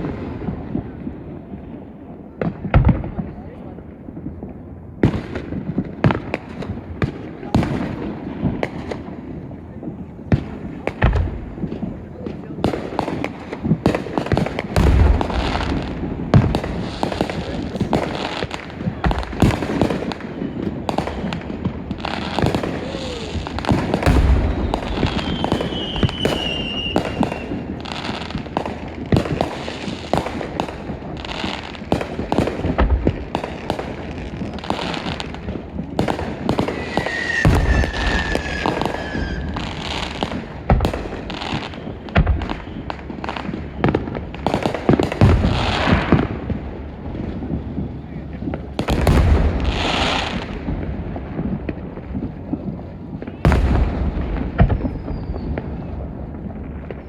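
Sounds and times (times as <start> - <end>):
deep fireworks booms: 0.0 - 57.0
fireworks bangs and crackles: 0.0 - 57.0
falling firework whistles: 18.9 - 27.7, 36.0 - 40.5, 41.3 - 44.0, 54.5 - 56.0.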